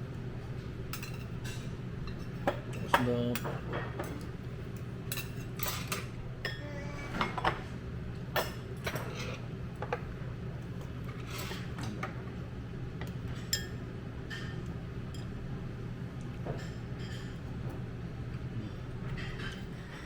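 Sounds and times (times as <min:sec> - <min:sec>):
steady low background hum: 0:00.0 - 0:20.0
utensils clinking against dishes: 0:00.9 - 0:07.7, 0:08.3 - 0:10.0, 0:11.0 - 0:12.2, 0:13.1 - 0:15.4, 0:16.4 - 0:17.5, 0:19.1 - 0:20.0.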